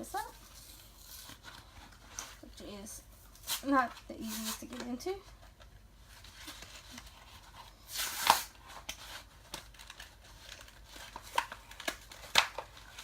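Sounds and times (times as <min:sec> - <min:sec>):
plastic packaging crinkling: 0:06.1 - 0:13.0.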